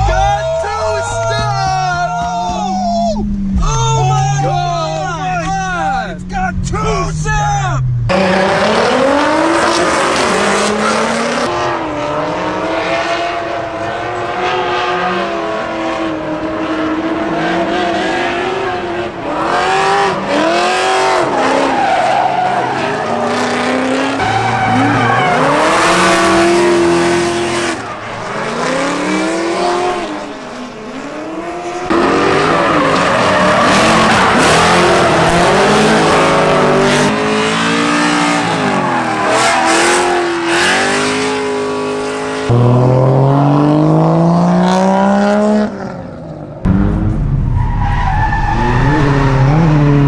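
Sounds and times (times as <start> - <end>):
car engines revving: 0.0 - 50.0
tyres squealing: 21.0 - 30.5.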